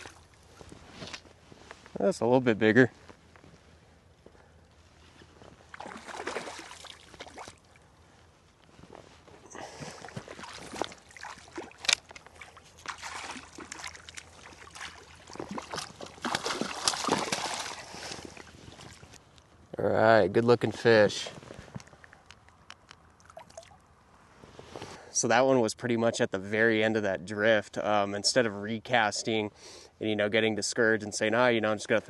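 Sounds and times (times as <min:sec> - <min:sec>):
fish thrashing water splashing: 0:05.7 - 0:07.7, 0:10.0 - 0:19.1.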